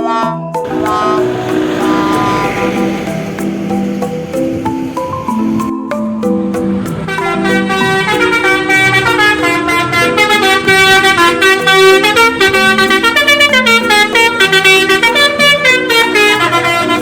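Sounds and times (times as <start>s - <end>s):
bus horn playing a fast tune: 0.1s - 5.6s, 7.1s - 17.0s.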